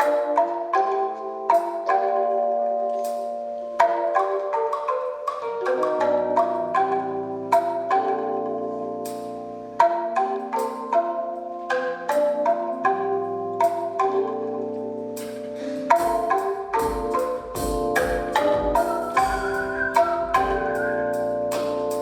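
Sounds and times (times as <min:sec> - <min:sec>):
low held tones: 0:15.5 - 0:22.0.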